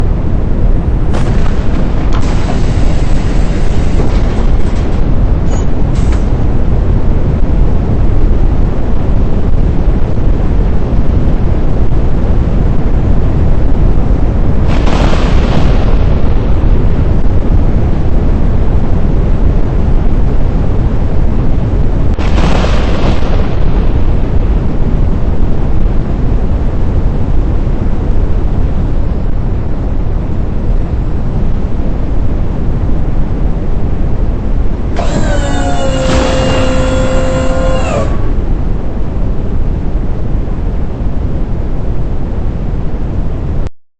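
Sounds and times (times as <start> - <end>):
wind buffeting microphone: 0.0 - 43.7
hissing bursts: 1.2 - 5.1, 35.0 - 38.6.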